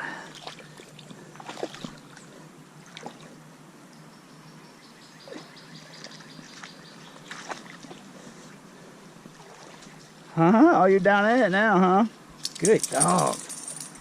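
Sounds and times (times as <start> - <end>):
splashes of wading in water: 0.0 - 3.4, 5.2 - 8.6, 9.3 - 10.3
creek water trickling: 0.0 - 14.0.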